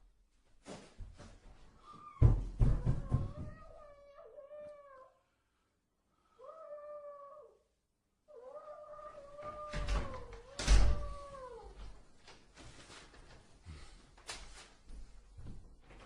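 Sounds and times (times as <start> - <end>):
knocks: 2.2 - 3.7
meow-like animal cries: 8.3 - 11.8.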